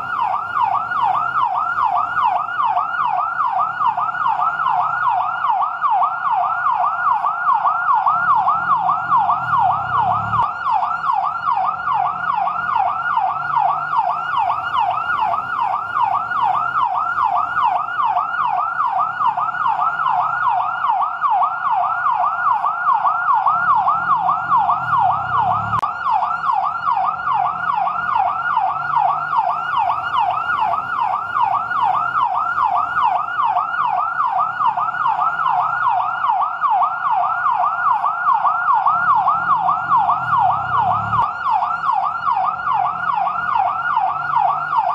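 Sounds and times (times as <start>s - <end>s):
fire truck yelp siren: 0.0s - 44.9s.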